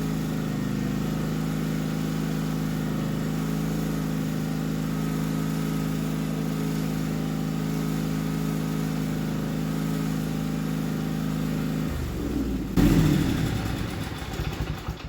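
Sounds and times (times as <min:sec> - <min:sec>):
garden tractor engine running: 0:00.0 - 0:15.0.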